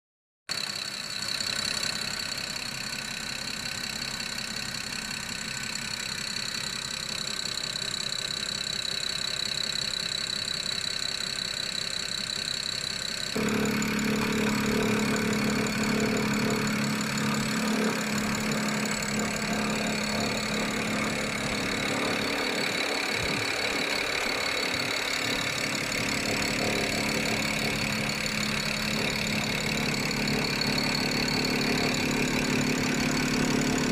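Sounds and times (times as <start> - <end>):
car engine idling: 0.5 - 33.9
engine rattle: 0.5 - 33.9.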